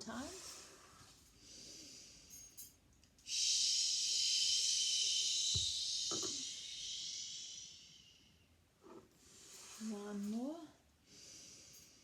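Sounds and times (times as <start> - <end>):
person making shh sound: 3.3 - 8.1.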